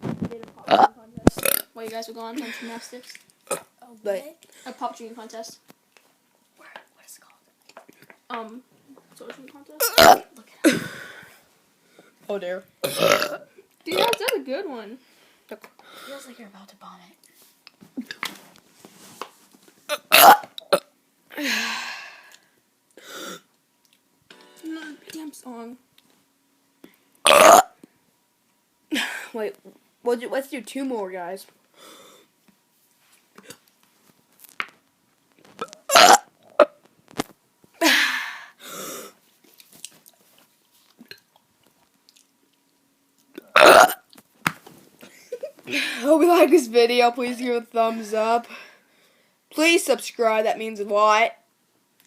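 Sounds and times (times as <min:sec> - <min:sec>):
child burping: 0:00.6 - 0:01.7, 0:03.4 - 0:03.7, 0:09.8 - 0:11.0, 0:12.8 - 0:14.4, 0:19.9 - 0:21.5, 0:27.2 - 0:27.8, 0:35.6 - 0:36.8, 0:43.4 - 0:44.1
mouth clicks: 0:00.7 - 0:01.7
breathy rush of air: 0:10.6 - 0:11.4.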